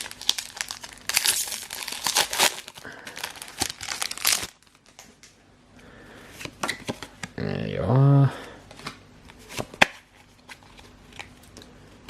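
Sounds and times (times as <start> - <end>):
foil wrapper tearing and crinkling: 0.0 - 5.1.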